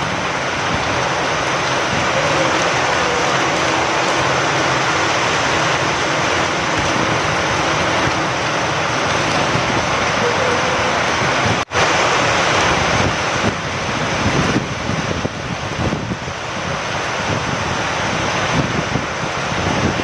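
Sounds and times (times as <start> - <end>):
rain falling: 0.0 - 20.0
wind: 0.0 - 20.0.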